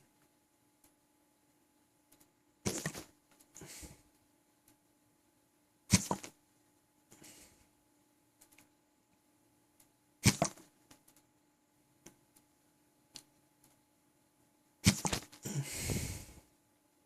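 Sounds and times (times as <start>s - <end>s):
soft breath: 3.6s - 4.1s, 7.1s - 7.8s, 15.4s - 16.5s
faint small clicks: 8.4s - 9.2s, 10.9s - 11.3s.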